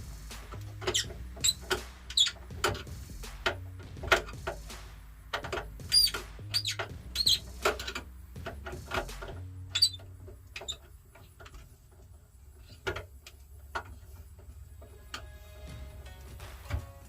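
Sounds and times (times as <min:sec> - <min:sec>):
brief tool squeaks: 0:00.9 - 0:02.4, 0:05.9 - 0:07.4, 0:09.8 - 0:10.0
tool clicks and taps: 0:05.3 - 0:12.0.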